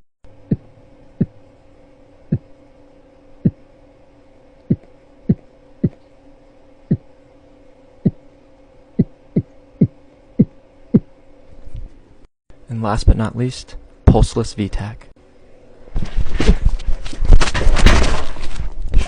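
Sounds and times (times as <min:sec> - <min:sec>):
faint steady hum: 0:00.2 - 0:19.0
beatboxed heartbeat thumps: 0:00.4 - 0:01.4, 0:02.3 - 0:02.5, 0:04.7 - 0:06.0, 0:06.9 - 0:07.1.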